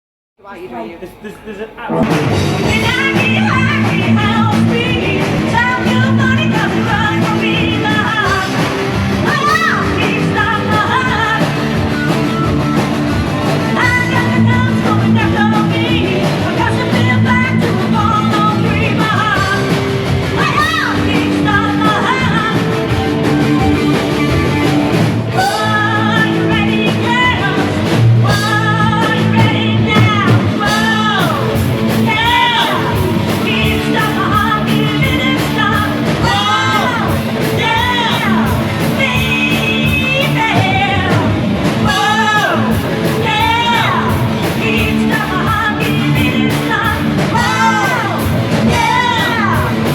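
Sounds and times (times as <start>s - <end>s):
rock band playing: 1.7s - 49.9s
person singing: 2.0s - 12.8s, 13.5s - 49.9s.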